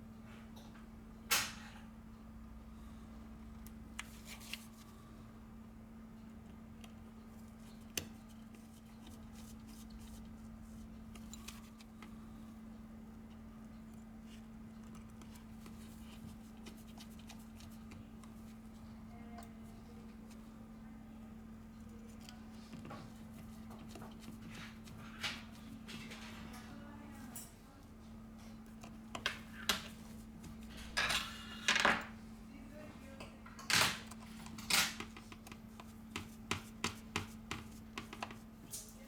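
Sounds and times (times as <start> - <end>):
small tools clicking and tapping: 28.4 - 32.1.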